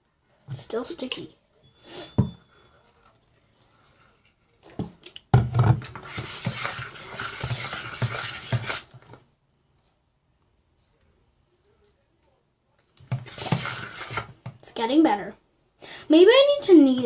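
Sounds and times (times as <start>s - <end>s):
fork stirring slime in a bowl: 5.0s - 9.2s, 13.0s - 14.5s.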